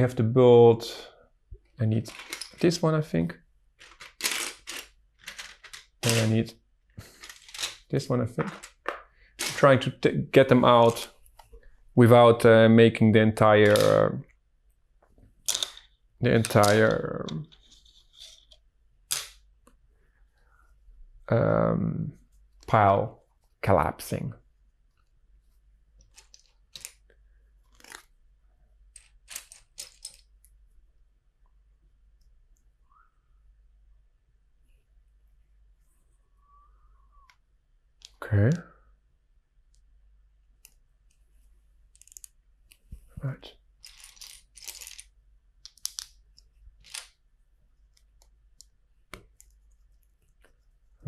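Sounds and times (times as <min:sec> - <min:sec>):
plastic bricks rattling: 0:02.0 - 0:02.6, 0:03.8 - 0:06.4, 0:43.8 - 0:45.1
plastic bricks clicking: 0:02.1 - 0:02.6, 0:03.8 - 0:06.4, 0:13.6 - 0:14.0, 0:15.4 - 0:19.4, 0:26.0 - 0:27.0, 0:41.9 - 0:42.8, 0:43.8 - 0:47.1.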